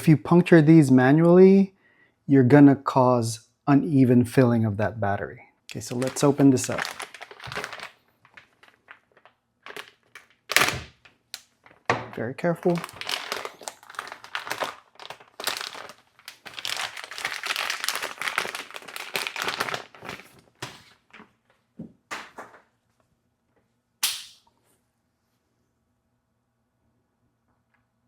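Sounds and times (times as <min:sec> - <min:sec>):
packaging tearing and crinkling: 0:05.7 - 0:21.2.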